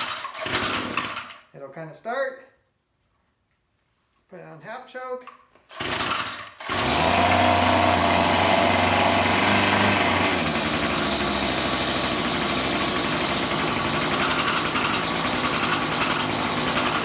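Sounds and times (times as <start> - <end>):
string trimmer engine running: 5.8 - 17.0.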